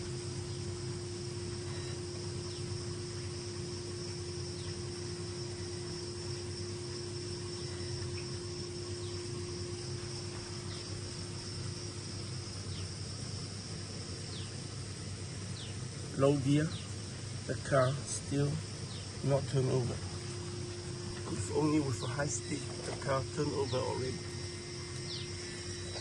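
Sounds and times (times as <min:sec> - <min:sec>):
insect chirring: 0:00.0 - 0:26.0
steady low hum: 0:00.0 - 0:26.0.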